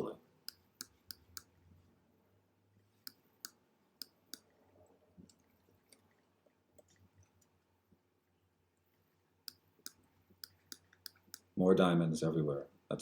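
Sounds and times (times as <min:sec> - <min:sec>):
computer mouse clicking: 0:09.5 - 0:11.5.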